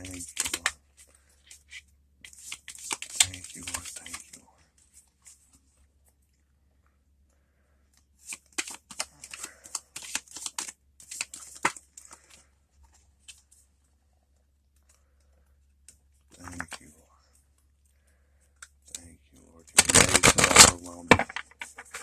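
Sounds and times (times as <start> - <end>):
cards being shuffled: 0.0 - 5.6, 8.2 - 12.4, 19.8 - 22.0.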